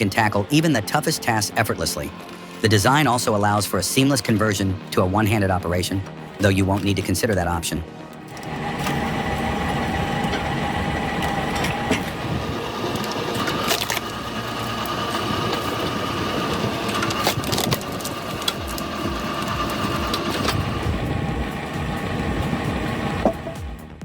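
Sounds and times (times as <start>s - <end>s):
log splitter running: 0.0s - 24.0s
wood cracking and splintering: 10.0s - 20.8s.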